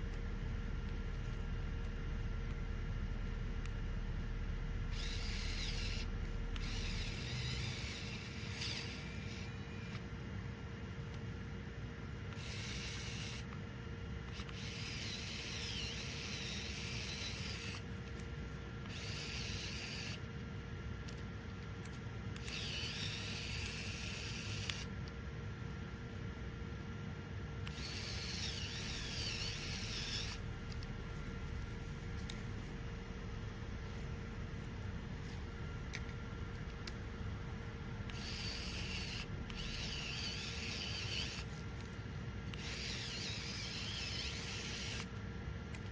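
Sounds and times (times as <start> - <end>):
low background hum: 0.0 - 45.9
electric screwdriver motor whining: 4.9 - 10.1, 12.3 - 13.6, 14.3 - 20.3, 21.9 - 24.9, 27.6 - 30.9, 38.1 - 41.9, 42.5 - 45.2.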